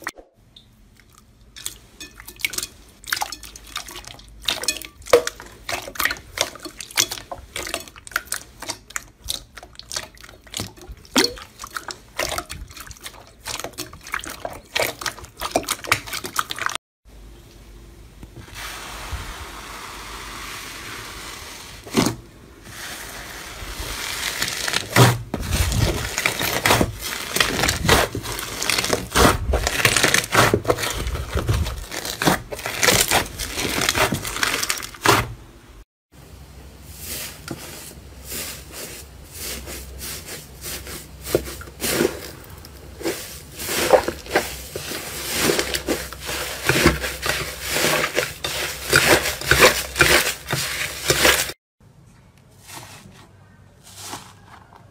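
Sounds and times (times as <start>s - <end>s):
crunchy material crackling squeezed by hand: 23.0s - 35.3s.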